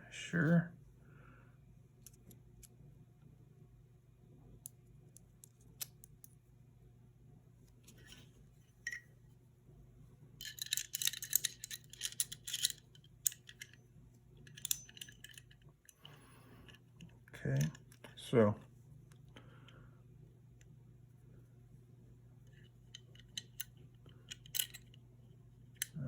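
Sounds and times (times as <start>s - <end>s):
steady low hum: 0.0s - 26.0s
metal parts clicking and tapping: 10.4s - 13.8s, 14.4s - 18.0s, 22.5s - 25.0s, 25.7s - 26.0s.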